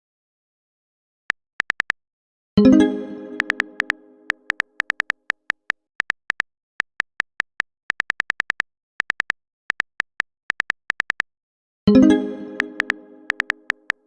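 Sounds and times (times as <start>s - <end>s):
short high typing beeps: 1.6s - 1.9s, 3.4s - 11.2s, 12.8s - 14.0s
synthesized musical chord: 2.6s - 4.4s.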